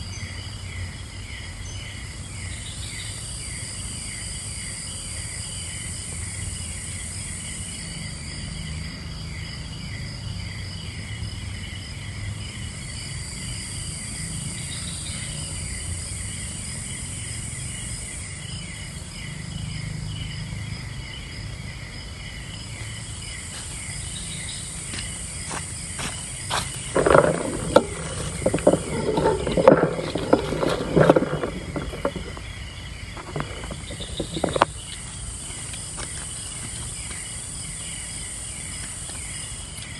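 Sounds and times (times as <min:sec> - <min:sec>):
insect pulsing chirp: 0:00.0 - 0:39.9
insects trilling: 0:00.0 - 0:39.9.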